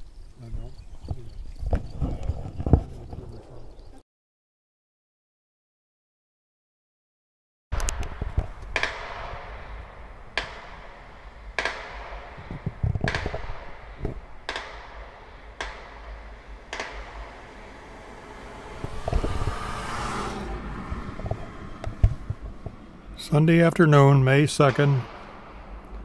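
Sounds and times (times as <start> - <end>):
distant gunshots with echo: 7.8 - 23.2, 23.9 - 26.0
rushing noise: 7.8 - 26.0
steady low rumble: 7.8 - 26.0.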